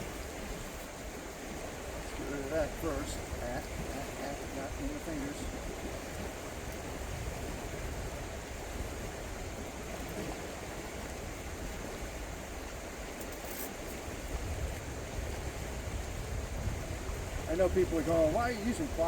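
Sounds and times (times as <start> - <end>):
river current rushing: 0.0 - 19.0.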